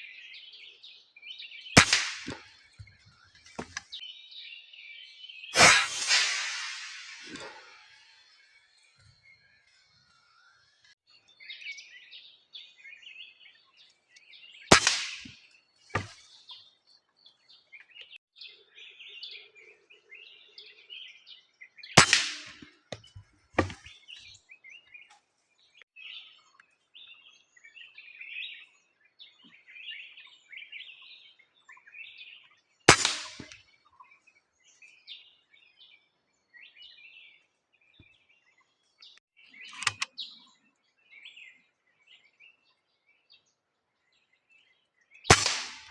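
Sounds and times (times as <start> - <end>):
soft knock of pellet impact: 1.8 - 2.4, 3.6 - 3.8, 22.0 - 23.8
air rifle cracks: 1.8 - 2.5, 5.6 - 7.9, 14.7 - 15.3, 22.0 - 22.7, 32.9 - 33.6, 39.7 - 40.1, 45.3 - 45.9.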